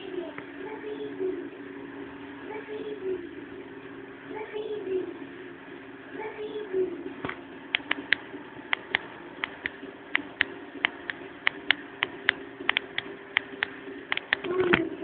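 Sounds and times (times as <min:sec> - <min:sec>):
table fan humming: 0:00.0 - 0:15.0
sharp clicks: 0:07.2 - 0:14.7.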